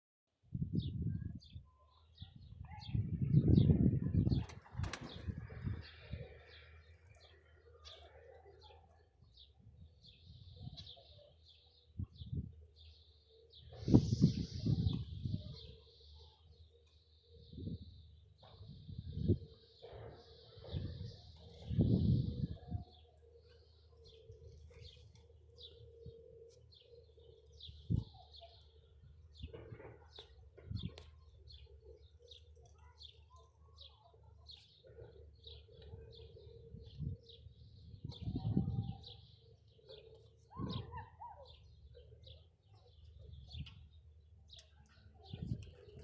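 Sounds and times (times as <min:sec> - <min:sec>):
small birds chirping: 0:00.8 - 0:46.0.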